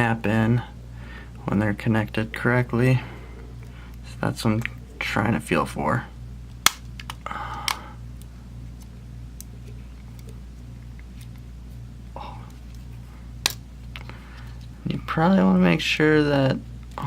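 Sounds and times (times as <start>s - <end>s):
steady low hum: 0.0s - 17.0s
small clicks handling phone parts: 6.6s - 11.5s
person murmuring: 12.1s - 12.6s.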